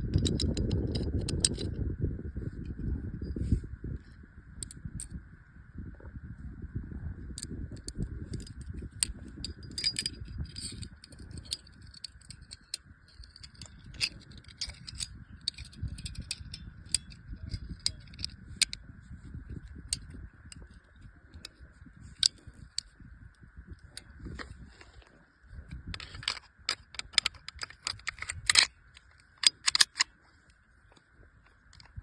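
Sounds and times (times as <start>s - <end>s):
jingling rattles: 0.0s - 1.8s, 7.4s - 23.0s, 23.7s - 32.0s
pistol metal parts clicking: 0.1s - 1.8s, 4.6s - 5.2s, 7.4s - 18.8s, 19.5s - 23.0s, 23.7s - 32.0s.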